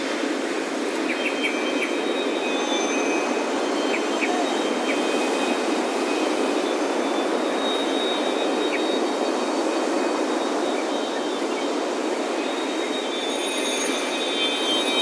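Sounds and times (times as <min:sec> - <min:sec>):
ocean surf on a beach: 0:00.0 - 0:15.0
wind chimes ringing: 0:13.1 - 0:15.0.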